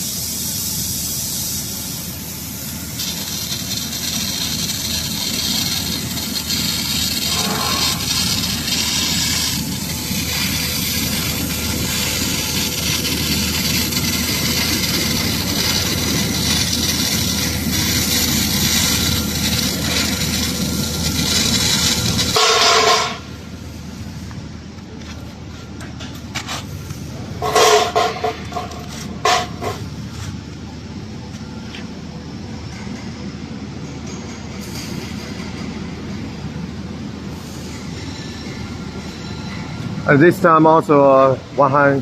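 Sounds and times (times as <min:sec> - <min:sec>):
laser cutter hissing: 0:00.0 - 0:24.2
low mechanical rumble: 0:01.6 - 0:33.8.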